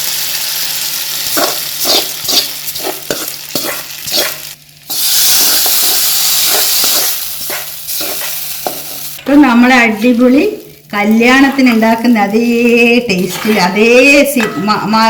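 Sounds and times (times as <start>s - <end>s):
spices sizzling in hot oil: 0.0s - 13.6s
spatula scraping and knocking pan: 1.4s - 4.4s, 5.4s - 9.0s, 12.6s - 14.8s.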